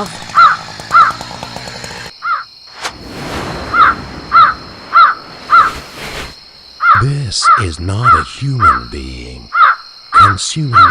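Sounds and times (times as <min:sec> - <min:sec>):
crow cawing: 0:00.3 - 0:01.2, 0:02.2 - 0:02.5, 0:03.8 - 0:05.7, 0:06.8 - 0:08.3, 0:09.5 - 0:10.9
hiss: 0:02.7 - 0:06.8.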